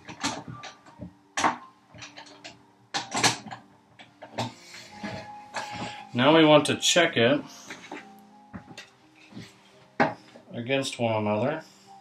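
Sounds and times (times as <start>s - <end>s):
hand tools clattering: 0.0s - 6.0s.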